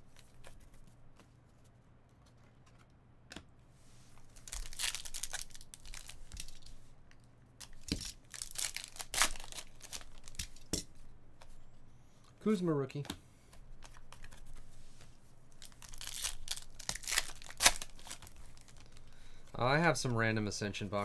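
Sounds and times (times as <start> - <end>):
plastic wrapper tearing and crinkling: 4.3 - 6.7, 7.6 - 10.6, 15.5 - 19.0
cards shuffling: 13.0 - 19.1.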